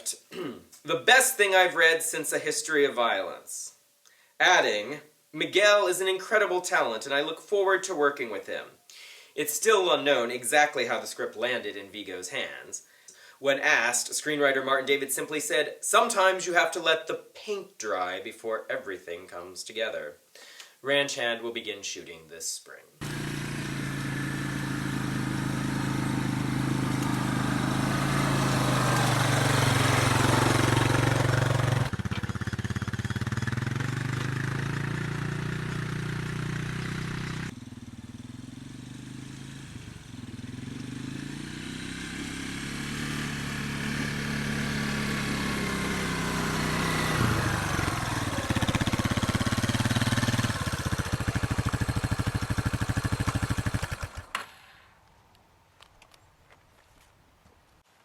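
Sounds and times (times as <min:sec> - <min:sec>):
vehicle engine running: 0:23.0 - 0:54.3.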